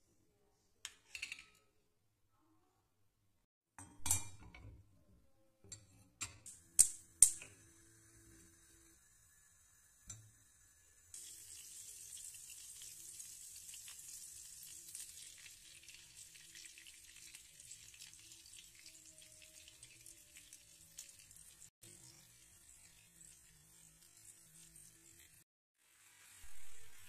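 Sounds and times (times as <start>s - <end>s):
butter sizzling in a pan: 6.6s - 27.0s.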